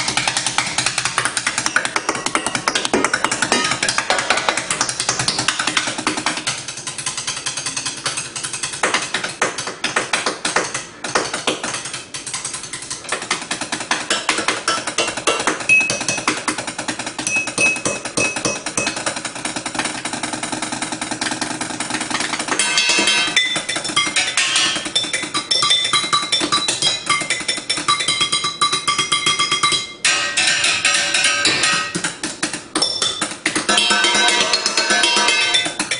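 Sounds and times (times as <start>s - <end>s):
chopsticks drumming on pots and pans: 0.0s - 19.9s, 22.0s - 35.9s
high metallic pings: 22.6s - 32.0s, 32.8s - 35.9s.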